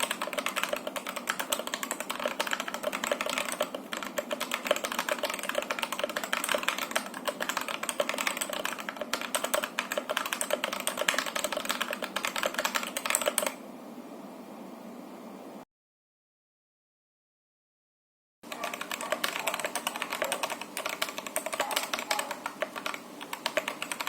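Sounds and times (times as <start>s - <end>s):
fast mechanical keyboard typing: 0.0s - 13.6s, 18.5s - 24.0s.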